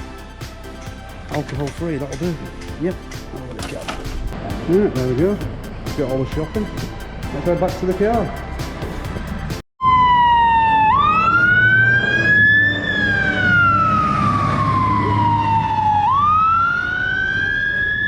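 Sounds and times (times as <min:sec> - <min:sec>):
low traffic rumble: 0:00.0 - 0:09.6
emergency siren wailing: 0:04.4 - 0:18.0.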